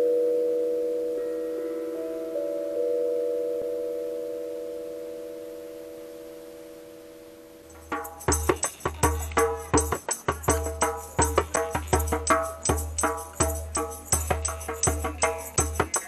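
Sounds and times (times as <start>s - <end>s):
fast percussion rhythm: 7.7s - 16.0s.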